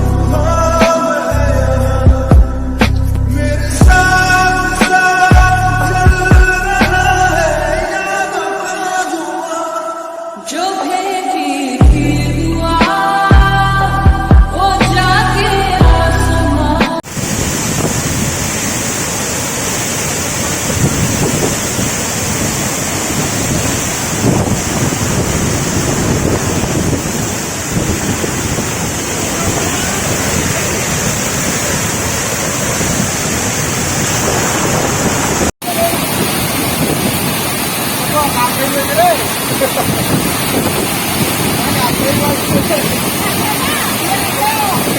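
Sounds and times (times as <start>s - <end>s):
water rushing: 0.0s - 12.0s, 12.6s - 44.9s
rain: 17.0s - 44.9s
wind buffeting microphone: 17.1s - 44.9s.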